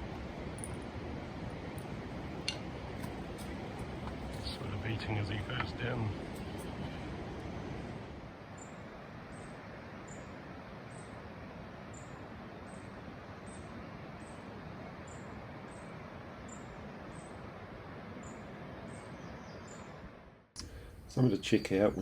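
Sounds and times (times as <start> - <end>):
steady rushing noise: 0.0 - 14.8
high insect or bird chirp: 8.5 - 11.2, 11.9 - 14.4.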